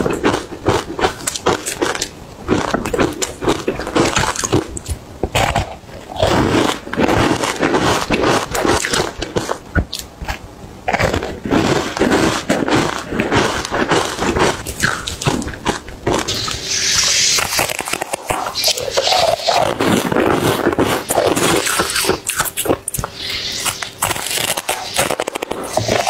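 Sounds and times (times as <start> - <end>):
crunching ice chewing: 0.0 - 26.0.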